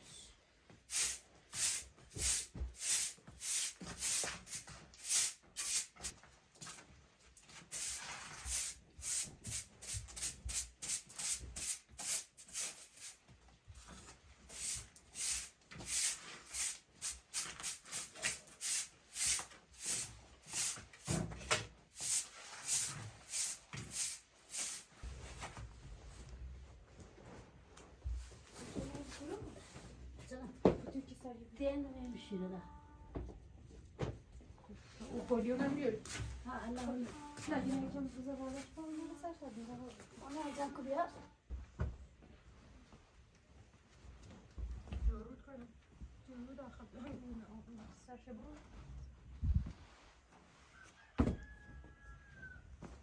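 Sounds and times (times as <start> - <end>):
rapid rubbing strokes: 14.5 - 21.2, 22.0 - 25.0.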